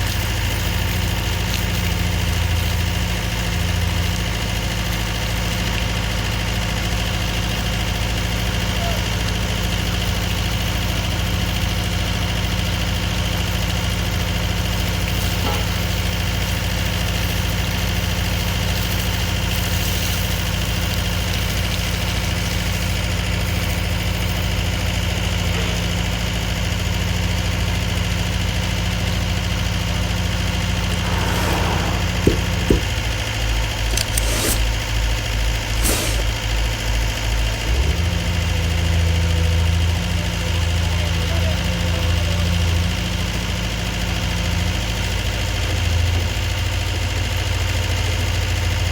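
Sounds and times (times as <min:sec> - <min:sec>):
excavator diesel engine running: 0:25.2 - 0:43.0
sharp knocks: 0:30.8 - 0:33.2.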